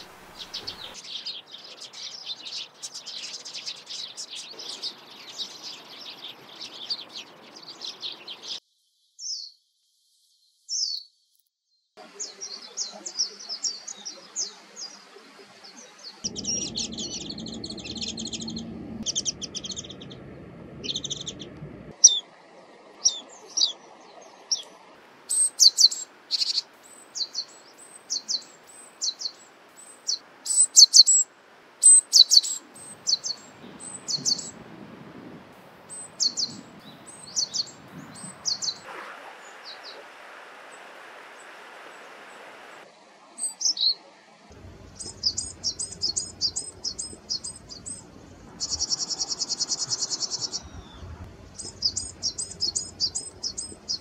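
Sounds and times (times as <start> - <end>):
songbirds chirping: 0.0 - 54.0.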